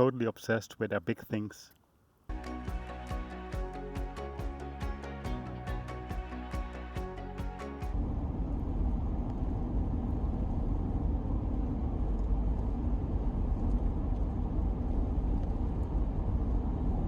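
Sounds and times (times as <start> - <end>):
engine and road noise rumble: 2.4 - 17.0.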